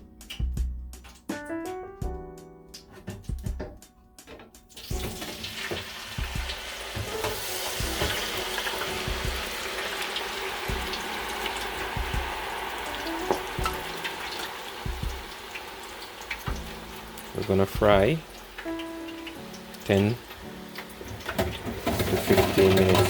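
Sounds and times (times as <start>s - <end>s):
fries sizzling in deep fryer: 4.7s - 23.0s.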